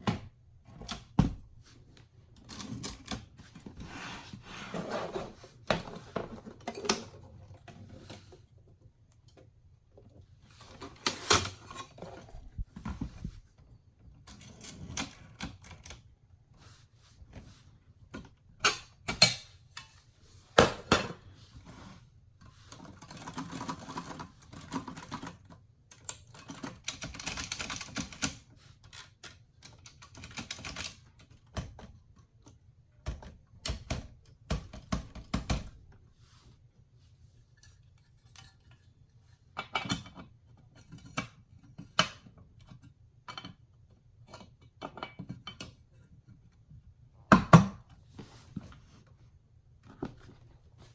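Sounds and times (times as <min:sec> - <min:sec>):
typewriter mechanism rattling: 0:23.0 - 0:29.0.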